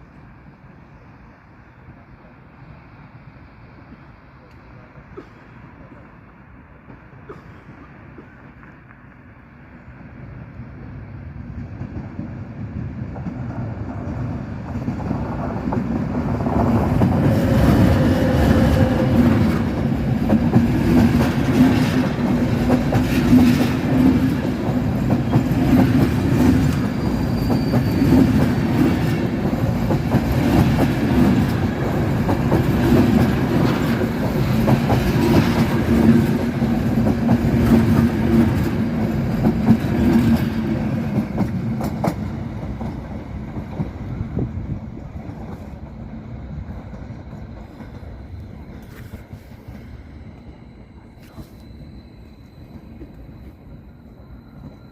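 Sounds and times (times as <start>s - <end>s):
train wheels clacking on rails: 11.3s - 51.9s.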